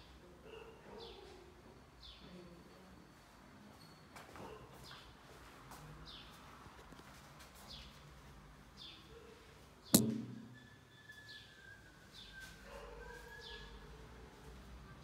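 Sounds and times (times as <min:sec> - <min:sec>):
sharp knock: 0:10.0 - 0:10.6.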